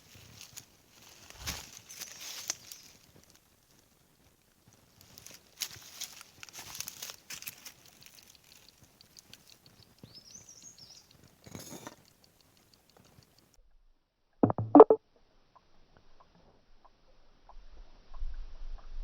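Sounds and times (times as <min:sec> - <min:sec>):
footsteps crunching on forest floor: 0:00.0 - 0:03.0, 0:05.0 - 0:08.6
bird chirping: 0:09.6 - 0:11.2.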